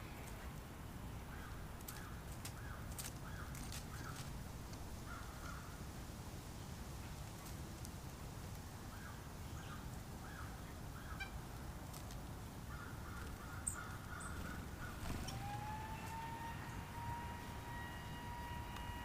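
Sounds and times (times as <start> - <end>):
rising steady tone: 15.1 - 19.0.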